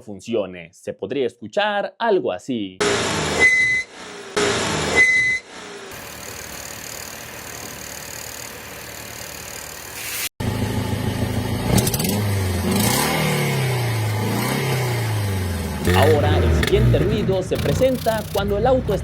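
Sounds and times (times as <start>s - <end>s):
car engine running: 5.6s - 19.0s
exhaust pipe rattling: 15.8s - 19.0s.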